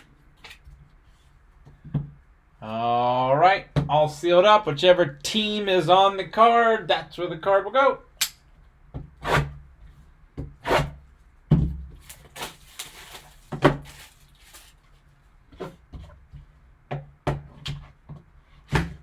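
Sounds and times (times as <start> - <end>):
cardboard scraping and rustling: 12.0 - 15.9
taps and knocks on cardboard: 15.9 - 19.0.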